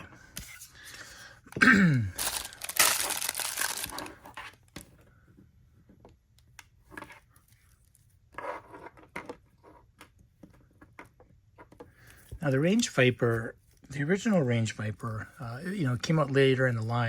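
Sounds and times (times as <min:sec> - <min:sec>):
plastic bag tearing and crinkling: 0:02.1 - 0:04.2.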